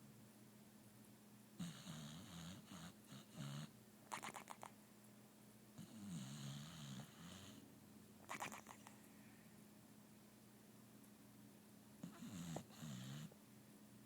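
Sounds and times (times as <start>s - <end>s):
dog snoring: 1.6s - 4.7s, 5.8s - 7.6s, 12.0s - 13.3s
dog rattling snort: 4.1s - 4.7s, 8.2s - 8.9s.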